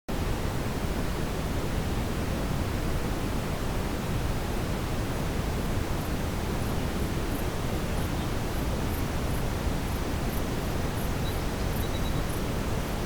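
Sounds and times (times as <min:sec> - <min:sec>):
brown noise hiss: 0:00.1 - 0:13.0
night forest ambience: 0:05.9 - 0:13.0.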